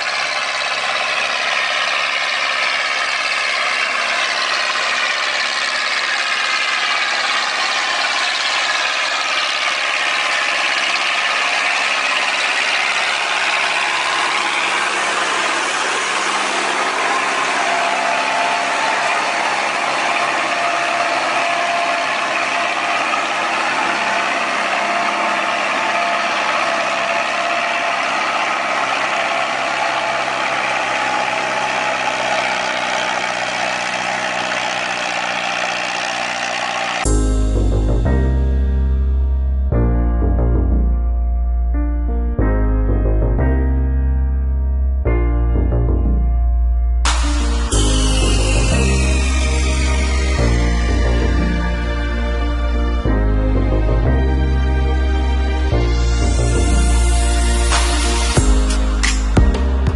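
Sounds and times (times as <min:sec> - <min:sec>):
large machine engine running: 0:00.0 - 0:44.7, 0:47.0 - 0:59.9.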